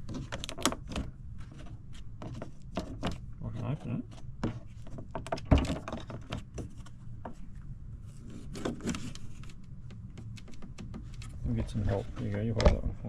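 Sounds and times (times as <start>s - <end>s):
wooden chest knocks and rattles: 5.1s - 6.4s.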